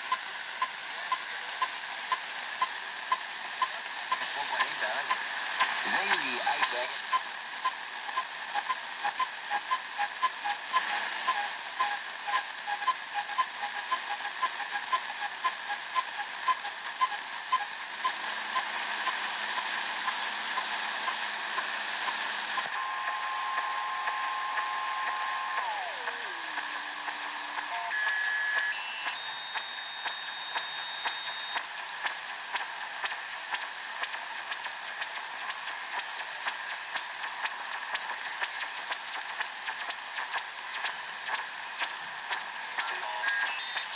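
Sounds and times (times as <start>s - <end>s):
radio static hiss: 0.0s - 43.9s
radio whistle gliding in pitch: 27.6s - 32.5s.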